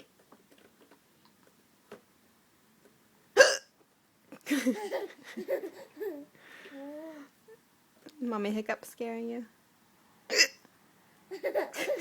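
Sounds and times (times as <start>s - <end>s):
woman hiccuping: 3.4s - 3.7s, 10.3s - 10.6s
baby babbling: 6.7s - 7.4s.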